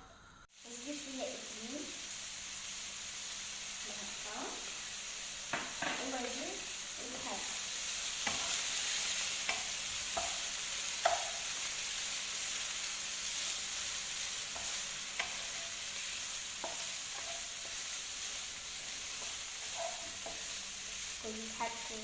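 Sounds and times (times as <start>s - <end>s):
chicken sizzling in a frying pan: 0.5s - 22.0s.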